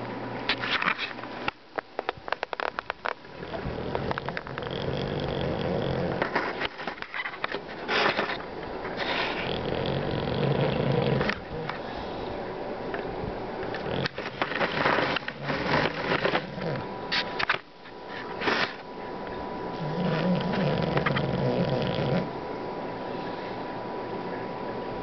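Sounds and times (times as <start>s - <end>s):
dog snoring loudly: 3.3s - 6.4s, 9.0s - 12.2s, 13.8s - 16.9s, 19.7s - 22.4s.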